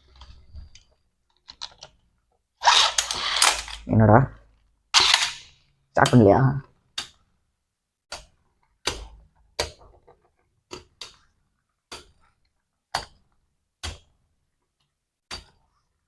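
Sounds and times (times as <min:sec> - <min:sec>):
spinning tops clacking: 0:02.6 - 0:03.9, 0:05.0 - 0:05.5.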